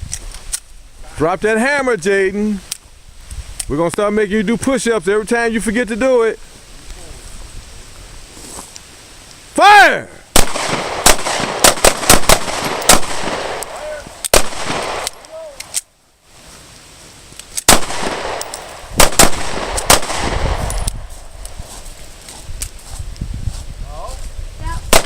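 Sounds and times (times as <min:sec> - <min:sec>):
pistol shots with echo: 0:10.3 - 0:15.5, 0:17.7 - 0:20.9.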